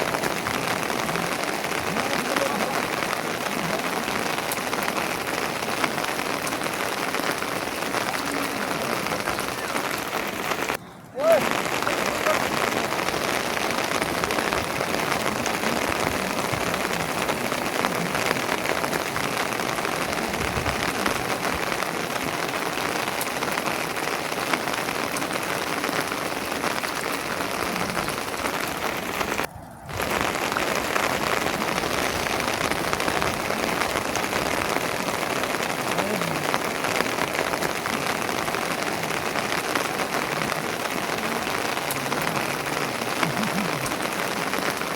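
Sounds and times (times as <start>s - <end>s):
heavy rain pattering: 0.0s - 44.9s.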